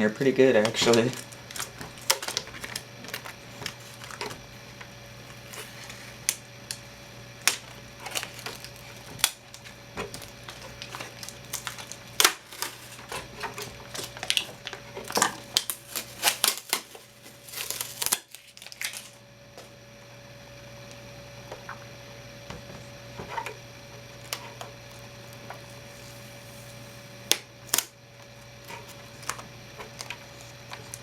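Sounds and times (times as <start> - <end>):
hands handling plastic: 0.0 - 6.8, 7.4 - 19.2
faint steady hum: 0.0 - 31.0.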